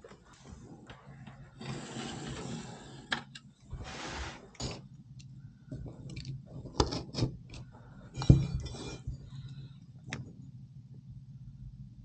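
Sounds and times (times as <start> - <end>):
low steady hum: 0.0 - 12.0
knocks and clinks of boards and tools: 8.2 - 9.3.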